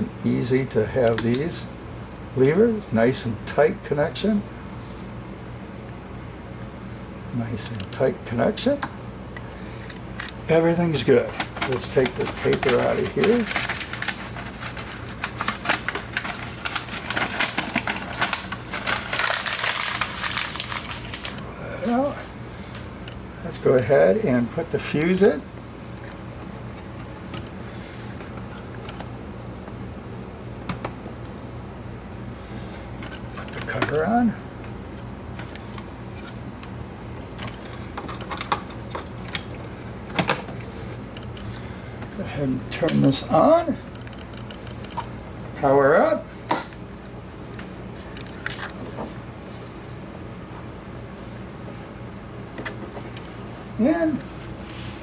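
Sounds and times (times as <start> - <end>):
low steady hum: 0.0 - 55.0
paper crackling: 10.9 - 22.8.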